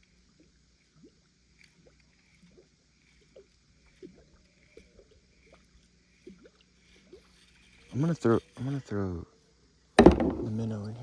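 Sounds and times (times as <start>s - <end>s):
water lapping at kayak hull: 0.0s - 8.6s.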